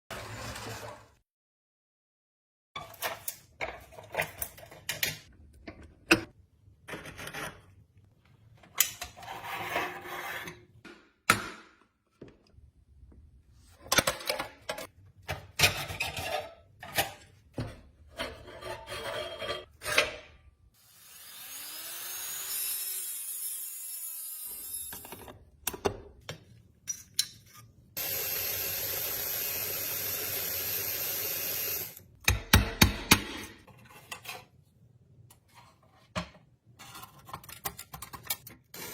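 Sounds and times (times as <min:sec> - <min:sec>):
hand tools scraping and knocking: 0:14.0 - 0:20.2.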